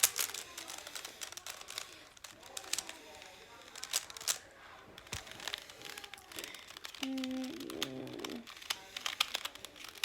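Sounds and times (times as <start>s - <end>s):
rubik's cube clicks: 5.0s - 10.0s.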